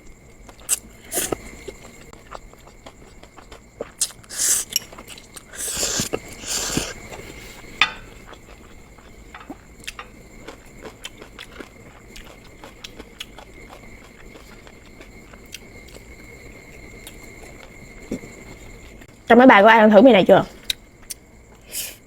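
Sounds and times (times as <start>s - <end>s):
quiet chewing: 0.4s - 19.0s
noodle slurps: 0.7s - 1.6s, 4.0s - 7.3s.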